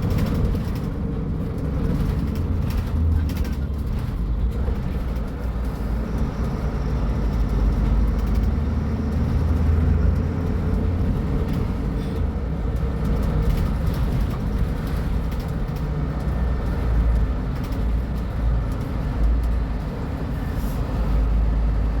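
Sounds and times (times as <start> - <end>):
bus diesel engine rumbling: 0.0 - 22.0.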